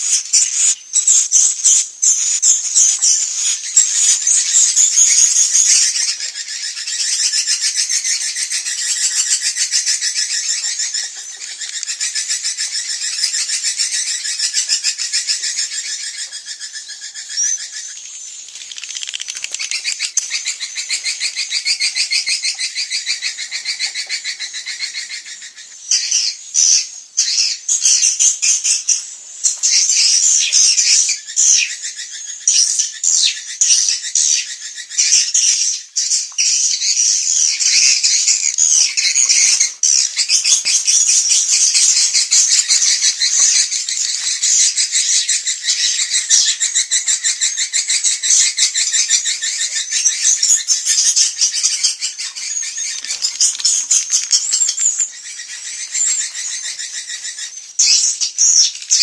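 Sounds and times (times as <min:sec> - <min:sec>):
swiftlets twittering: 0:37.5 - 0:59.0.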